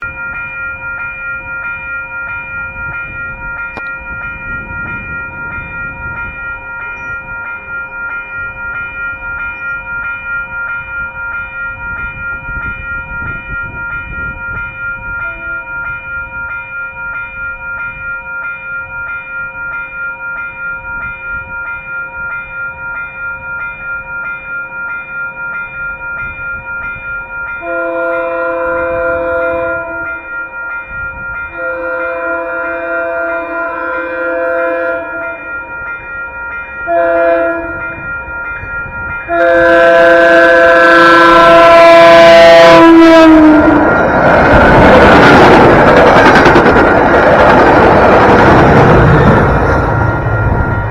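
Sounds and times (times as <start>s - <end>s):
train horn chord: 15.2s - 15.8s, 27.6s - 30.3s, 31.5s - 35.6s, 36.8s - 38.2s, 39.2s - 44.2s.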